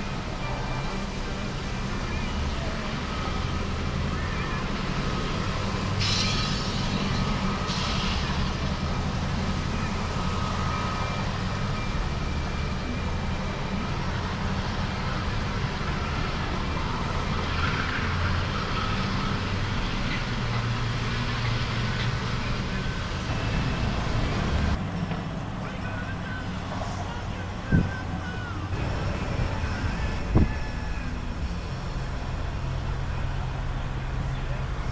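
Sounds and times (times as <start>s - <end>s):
train rumbling past: 0.0s - 34.9s.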